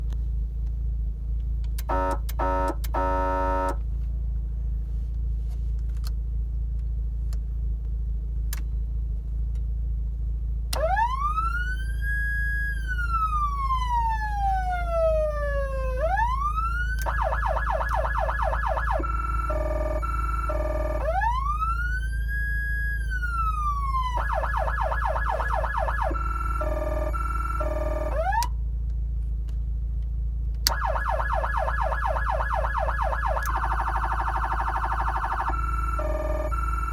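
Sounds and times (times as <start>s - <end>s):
steady low hum: 0.0s - 36.9s
hi-lo siren tones: 1.9s - 3.8s, 10.8s - 28.5s, 30.7s - 36.9s
siren horn-tone blasts: 1.9s - 3.8s, 10.8s - 28.5s, 30.7s - 36.9s
siren wail: 1.9s - 3.8s, 10.8s - 28.5s, 30.7s - 36.9s
siren yelp: 1.9s - 3.8s, 10.8s - 28.5s, 30.7s - 36.9s.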